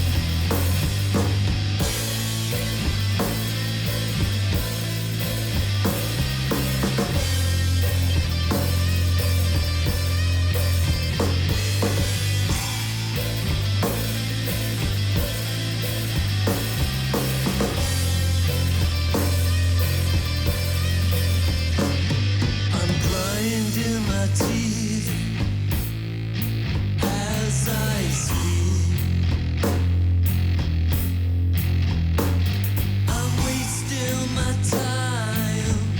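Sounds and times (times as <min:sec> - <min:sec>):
heavy rock band playing: 0:00.0 - 0:35.9.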